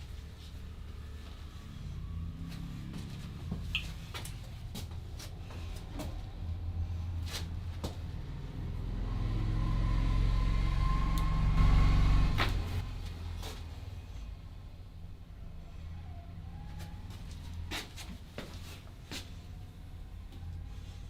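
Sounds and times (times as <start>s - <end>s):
low rumble with hum: 0.0s - 21.0s.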